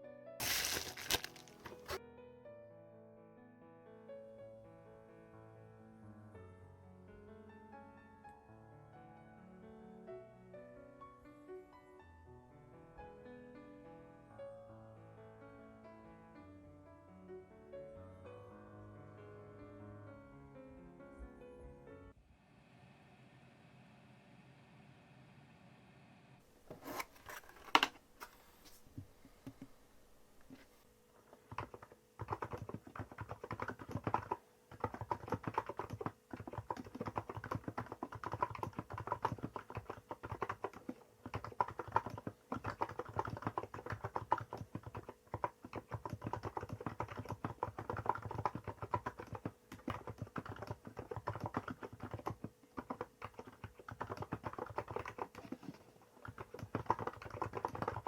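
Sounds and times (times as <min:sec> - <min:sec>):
keyboard typing: 0:31.4 - 0:58.0.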